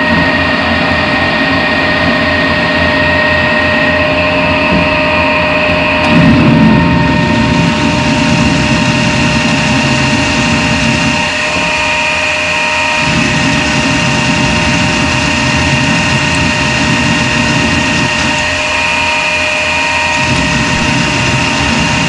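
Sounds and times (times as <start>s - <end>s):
lathe whine: 0.0s - 22.0s
low churning: 5.4s - 22.0s.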